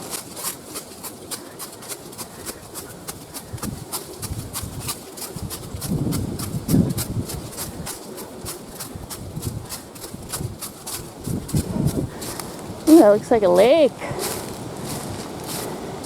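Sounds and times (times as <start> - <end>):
footsteps on a trail: 0.0 - 16.0
low rumble on microphone: 11.2 - 12.9.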